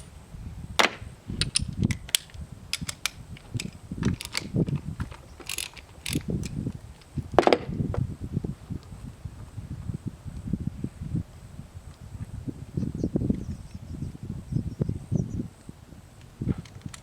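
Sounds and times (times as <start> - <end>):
low knocks and handling noise: 0.8 - 8.0
metallic tool clicks and clinks: 1.4 - 7.1.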